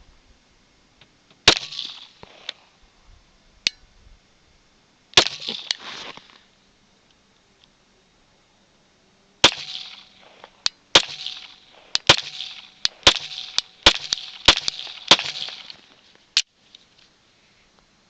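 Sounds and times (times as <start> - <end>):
fainter sharp cracks: 9.4 - 16.5
handgun shots with echo: 11.0 - 15.8.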